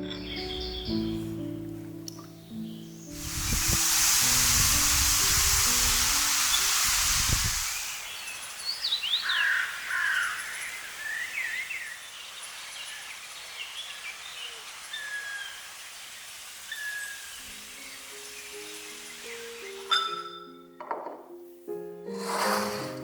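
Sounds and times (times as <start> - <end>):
wild birds singing and calling: 0.0 - 1.4, 7.8 - 20.8
music: 0.0 - 7.8, 17.4 - 23.0
steady hiss: 2.6 - 19.9.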